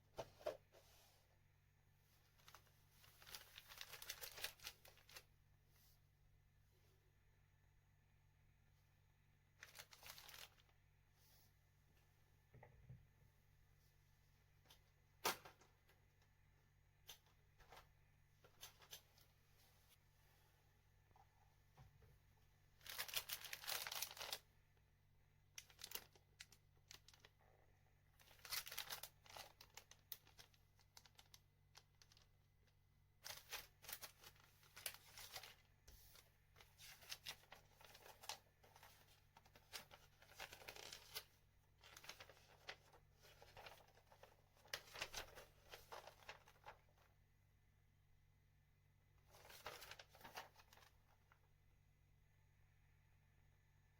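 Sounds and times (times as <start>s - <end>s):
plastic packaging crinkling and tearing: 2.4s - 5.3s, 9.6s - 10.7s, 22.8s - 24.4s, 25.6s - 27.3s, 28.2s - 32.3s, 33.2s - 35.6s, 36.7s - 46.9s, 49.3s - 51.0s.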